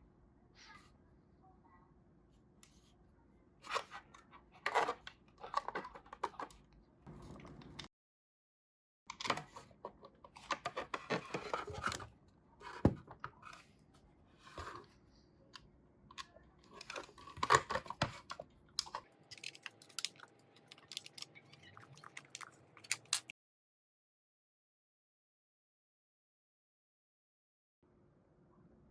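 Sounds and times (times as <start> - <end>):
small hard parts clicking and tapping: 18.8 - 23.3.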